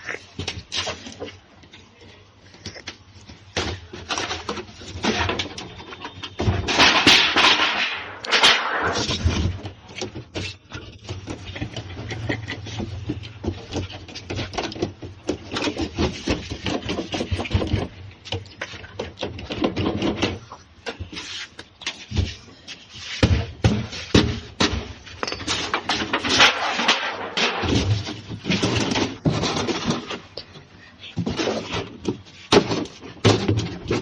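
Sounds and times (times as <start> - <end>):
metal casing knocks and clanks: 3.6 - 20.5.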